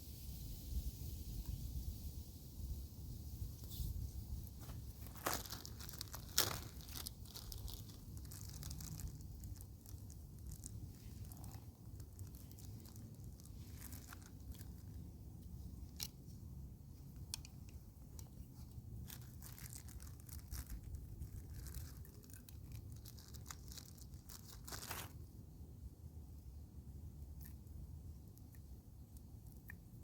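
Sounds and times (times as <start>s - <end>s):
wind rumbling on microphone: 0.0s - 14.9s
crackles and rustling: 3.3s - 25.4s.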